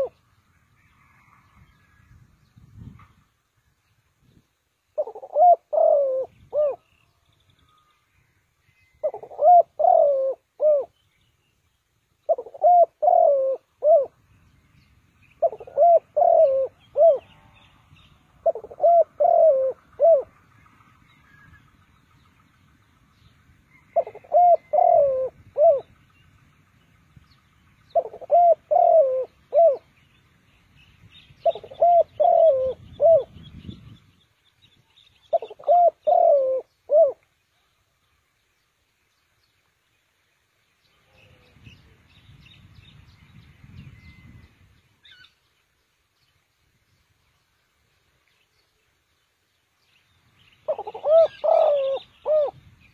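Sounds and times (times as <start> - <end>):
dove cooing: 0.0 - 0.2, 5.0 - 6.8, 9.0 - 11.0, 12.3 - 14.2, 15.4 - 17.5, 18.4 - 20.4, 23.7 - 25.9, 27.9 - 29.9, 31.4 - 33.7, 35.3 - 37.2, 50.6 - 52.6.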